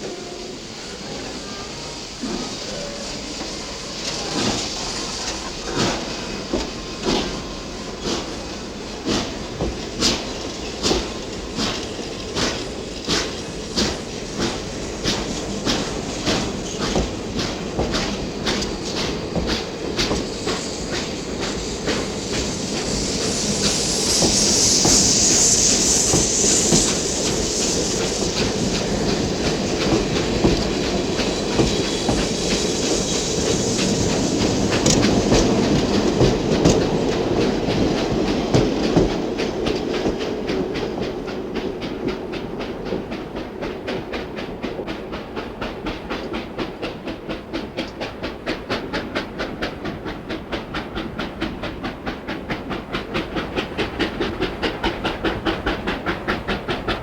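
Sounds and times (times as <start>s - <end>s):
steam hiss: 0.0s - 57.0s
steam locomotive beats: 0.0s - 57.0s.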